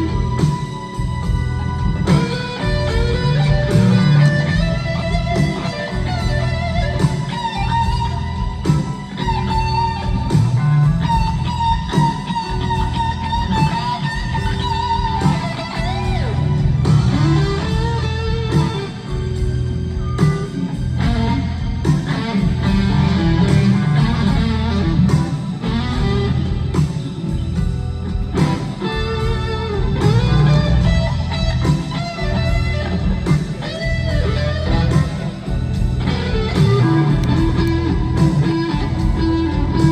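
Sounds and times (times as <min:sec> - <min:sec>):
electric guitar lead: 0:00.0 - 0:39.9
heavy bass line: 0:00.0 - 0:39.9.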